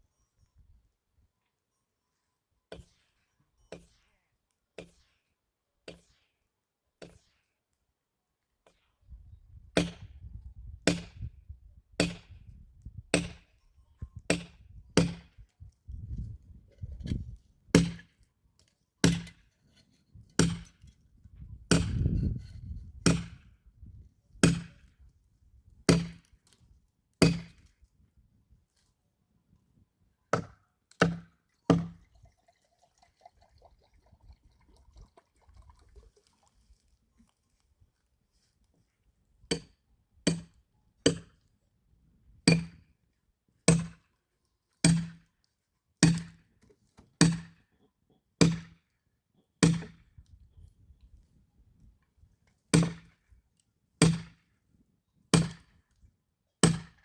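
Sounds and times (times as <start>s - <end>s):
axe chopping firewood: 4.8s - 5.0s, 5.8s - 6.1s, 9.8s - 10.1s, 10.8s - 11.3s, 12.0s - 12.5s, 13.1s - 13.4s, 14.3s - 15.4s, 17.0s - 18.2s, 19.0s - 19.5s, 20.3s - 21.0s, 21.7s - 23.5s, 24.4s - 24.9s, 25.9s - 26.6s, 27.2s - 27.7s, 30.3s - 32.0s, 39.5s - 41.4s, 42.5s - 42.9s, 43.7s - 44.1s, 44.8s - 45.3s, 46.0s - 46.4s, 47.0s - 47.6s, 48.4s - 48.8s, 49.6s - 50.2s, 52.7s - 53.2s, 54.0s - 54.5s, 55.3s - 55.8s, 56.6s - 57.0s.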